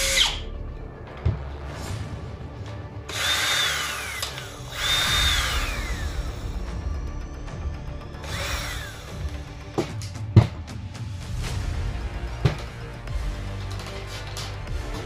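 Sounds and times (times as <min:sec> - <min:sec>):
small electric motor whirring: 0:00.0 - 0:00.4, 0:03.1 - 0:06.6, 0:08.2 - 0:09.2.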